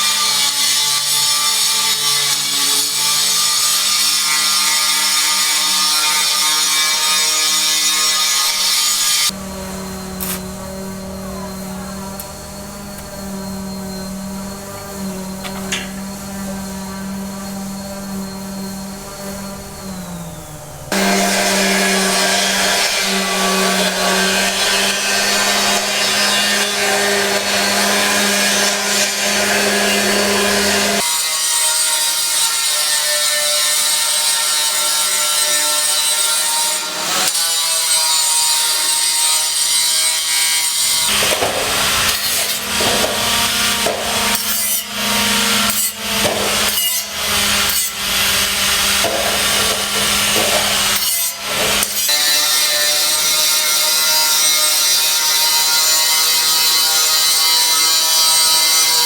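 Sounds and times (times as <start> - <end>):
harsh grinding noise: 0.0 - 31.1, 39.7 - 59.0
motor hum: 9.3 - 31.0.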